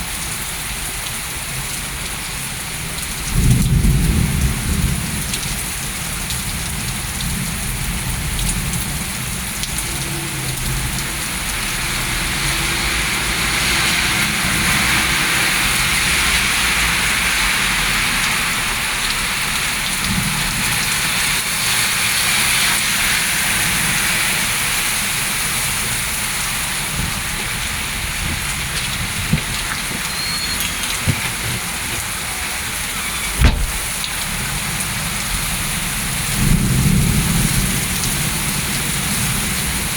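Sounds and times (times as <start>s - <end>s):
heavy rain pouring: 0.0s - 39.9s
thunder rumbling: 33.2s - 35.3s
sharp knocks: 33.4s - 34.0s.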